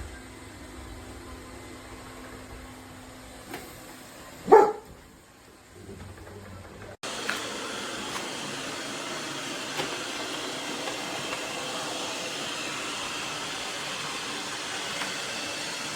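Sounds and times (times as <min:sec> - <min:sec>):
robot vacuum cleaner whirring: 0:07.0 - 0:15.9.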